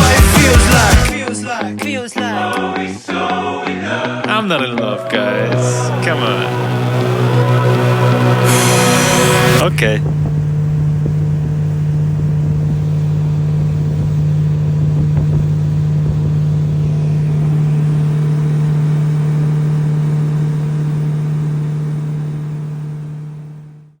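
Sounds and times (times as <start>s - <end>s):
motorboat engine running: 5.4s - 24.0s.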